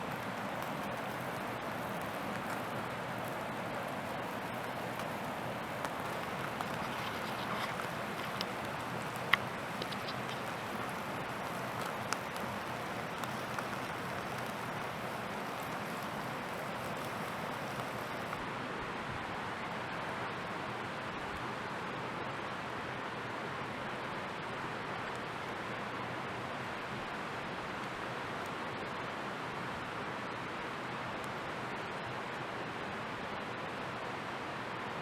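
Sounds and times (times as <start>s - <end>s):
campfire hissing: 0.0s - 18.4s
fire crackles and pops: 0.0s - 18.4s.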